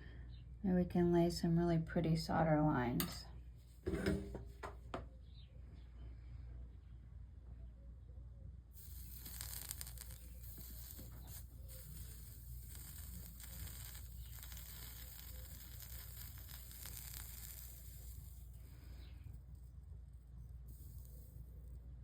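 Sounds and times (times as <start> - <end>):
flux sizzling and crackling: 8.8 - 19.6.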